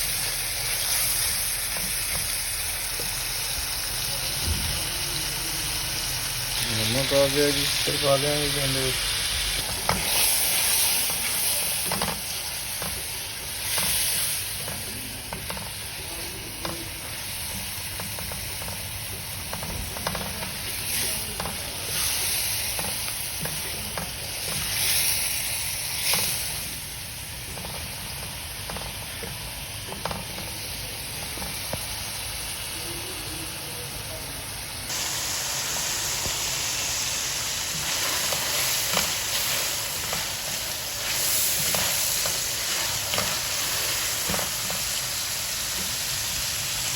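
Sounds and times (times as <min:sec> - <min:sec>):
chicken sizzling in hot oil: 0:00.0 - 0:46.9.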